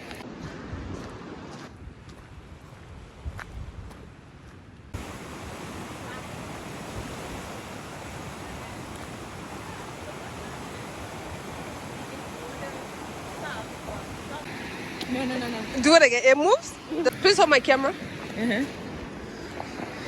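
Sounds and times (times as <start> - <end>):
waterfall roaring: 5.0 - 20.0.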